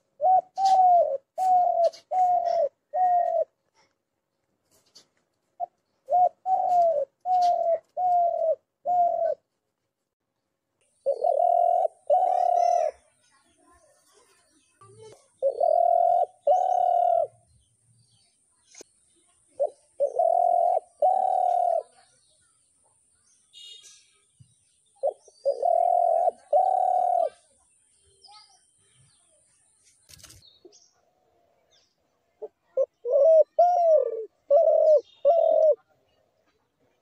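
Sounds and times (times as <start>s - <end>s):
dove cooing: 0.0s - 3.6s, 5.6s - 9.4s, 11.0s - 13.0s, 15.3s - 17.4s, 19.5s - 22.0s, 25.0s - 27.5s, 32.4s - 35.8s
faint small bird chirps: 10.8s - 37.0s.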